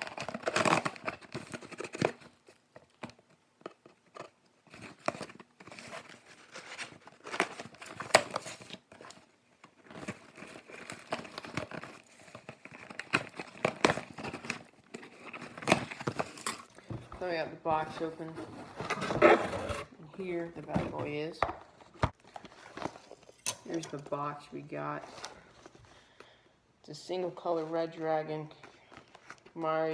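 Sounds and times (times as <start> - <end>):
cardboard crinkling and tearing: 0.0 - 16.7.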